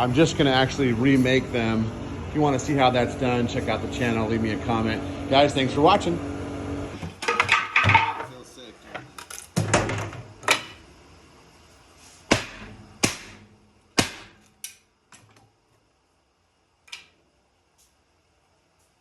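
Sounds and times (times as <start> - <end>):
objects knocking and clacking: 7.0 - 10.8.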